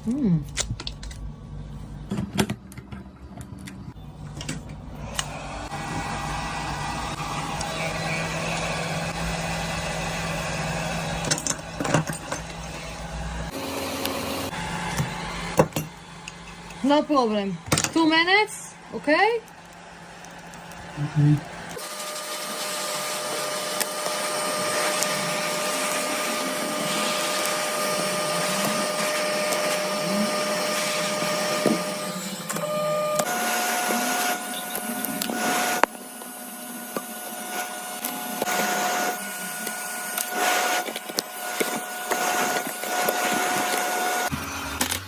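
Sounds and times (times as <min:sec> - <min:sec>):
electric machine whining hum: 0:03.6 - 0:45.0.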